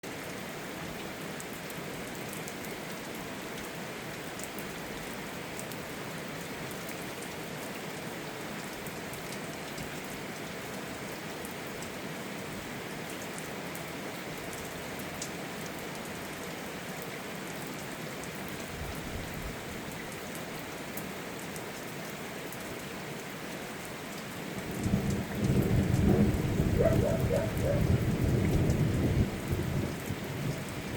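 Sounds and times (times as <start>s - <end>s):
steady rain falling: 0.0s - 30.9s
raindrops ticking: 24.1s - 30.9s
low thunder rumble: 24.7s - 30.9s.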